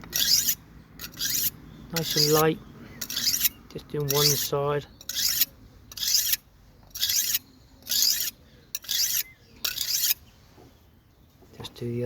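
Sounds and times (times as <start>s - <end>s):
blade scraping on sharpening stone: 0.0s - 2.4s, 3.0s - 10.2s.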